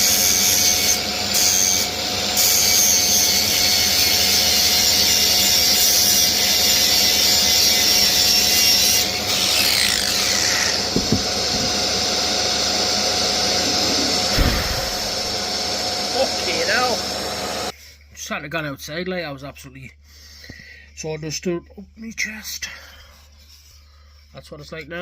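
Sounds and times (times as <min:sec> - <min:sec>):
power grinder rasping wood: 0:00.0 - 0:17.7
knocks: 0:10.9 - 0:11.8.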